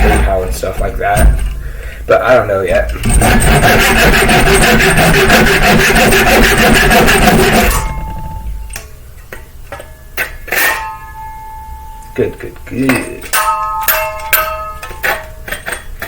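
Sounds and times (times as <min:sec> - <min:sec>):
hand tool scraping wood: 0:03.0 - 0:08.0.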